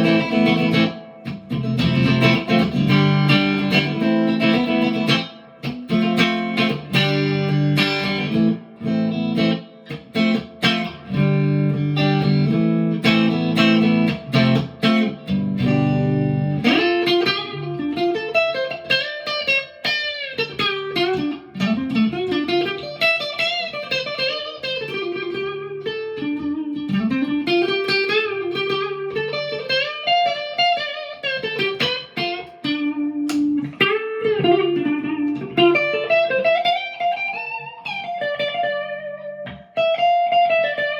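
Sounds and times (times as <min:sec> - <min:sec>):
electric guitar lead with string bends: 0:00.0 - 0:40.9
electric guitar playing chords and riffs: 0:00.0 - 0:40.9.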